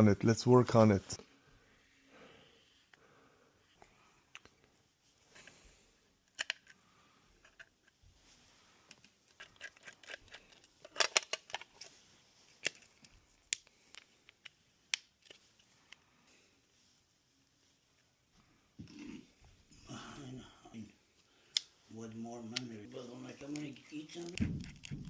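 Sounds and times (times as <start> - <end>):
small tools clicking and scraping: 7.4 - 8.0, 8.8 - 11.9.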